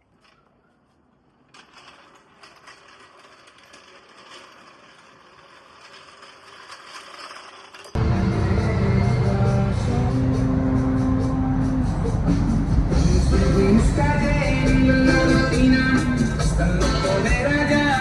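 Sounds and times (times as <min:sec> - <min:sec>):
mechanical rattling and clicking: 0:01.4 - 0:08.0.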